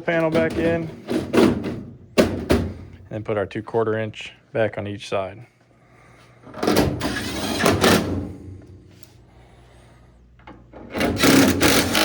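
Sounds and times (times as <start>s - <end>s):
screws being driven: 11.0s - 12.0s.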